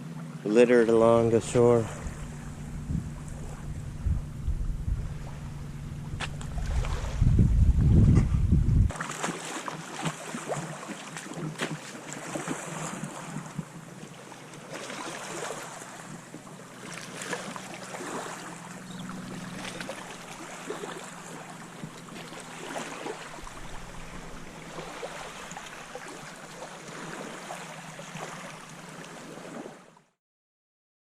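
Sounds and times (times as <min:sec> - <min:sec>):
low steady hum: 0:00.0 - 0:09.0, 0:13.2 - 0:29.1
water lapping around kayak: 0:00.0 - 0:30.2
wind: 0:00.0 - 0:30.2
paddle splashes: 0:05.0 - 0:08.3, 0:08.9 - 0:30.0.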